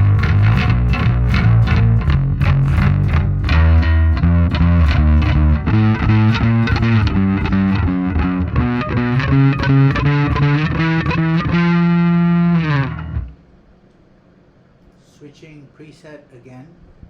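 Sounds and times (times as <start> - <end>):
electric bass plucked notes: 0.0 - 13.4.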